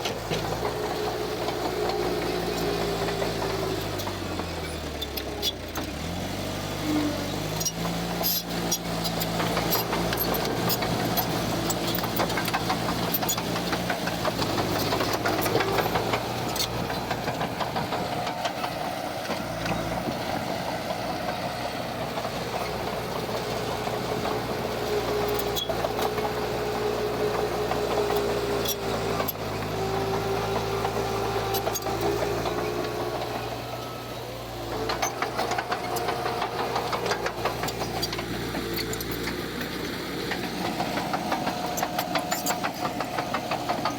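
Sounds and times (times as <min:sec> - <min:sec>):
diesel construction machine running: 0:00.0 - 0:43.9
metal and rock clanking: 0:34.8 - 0:43.9.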